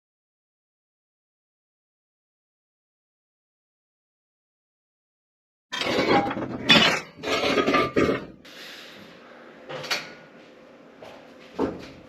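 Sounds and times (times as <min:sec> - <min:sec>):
metal tools clanking: 0:05.7 - 0:08.3.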